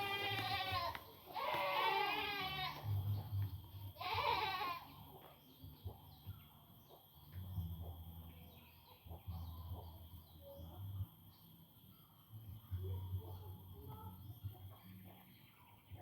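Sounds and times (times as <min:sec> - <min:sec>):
goat bleating: 0:00.0 - 0:03.1, 0:04.0 - 0:05.0.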